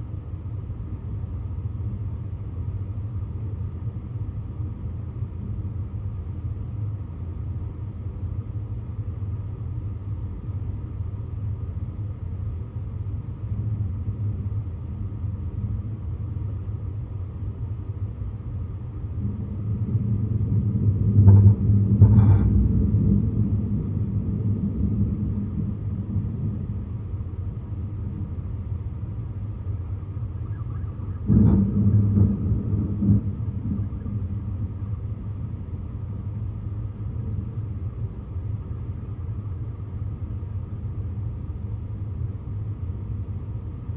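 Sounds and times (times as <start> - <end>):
steady low background rumble: 0.0 - 43.9
thunder rumbling: 18.6 - 39.9.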